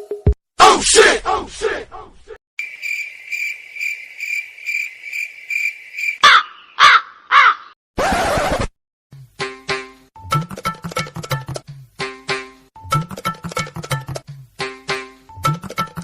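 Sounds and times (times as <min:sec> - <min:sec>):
crickets chirping: 0:02.6 - 0:06.8
crow cawing: 0:06.2 - 0:07.8.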